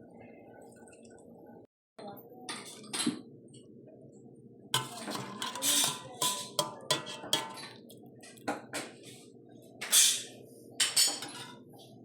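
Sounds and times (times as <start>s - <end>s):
kitchen utensils clinking: 4.8s - 8.0s, 10.0s - 11.6s.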